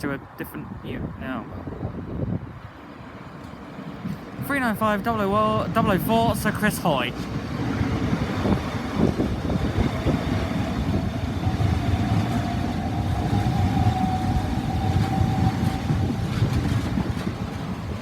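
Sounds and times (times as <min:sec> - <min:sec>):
electric train pulling away: 0:07.1 - 0:18.0.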